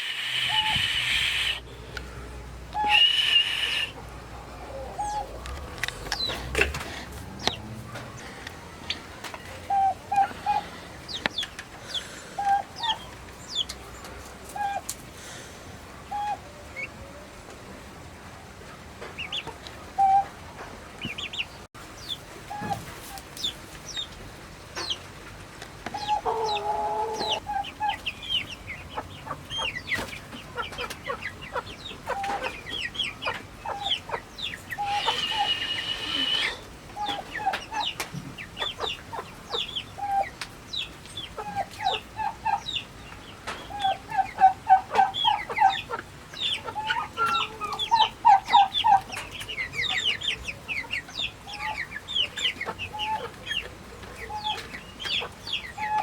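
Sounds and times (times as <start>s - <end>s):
high-pitched peeps: 0.0s - 1.6s, 2.8s - 4.0s, 33.1s - 38.0s
long turkey call: 0.0s - 1.6s, 2.8s - 4.0s, 34.8s - 37.2s
turkeys clucking: 0.0s - 17.6s, 18.6s - 21.6s, 25.8s - 56.0s.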